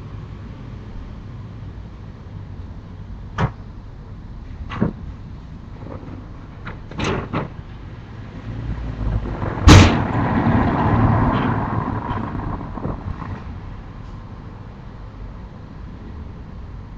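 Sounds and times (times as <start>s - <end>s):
rumbling noise: 4.5s - 15.8s
sharp knocks and clatters: 9.0s - 13.6s
loud bang: 9.2s - 13.5s.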